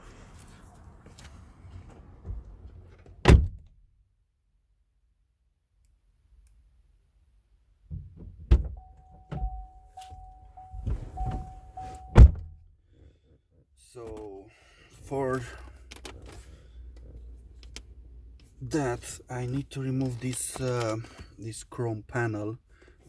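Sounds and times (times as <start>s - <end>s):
car door opening: 0.0s - 3.7s, 7.9s - 12.6s
car door shutting: 0.0s - 3.7s, 7.9s - 12.6s
warning tone chiming: 8.8s - 12.2s
rustling of person getting in: 15.1s - 21.6s.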